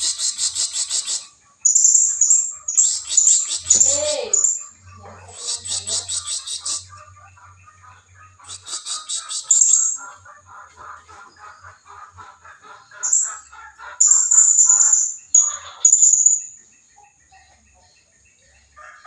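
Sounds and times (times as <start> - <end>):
lower chirping notes: 0.0 - 6.8, 14.0 - 17.2
shrill parrot calls: 1.8 - 4.6, 14.0 - 16.4.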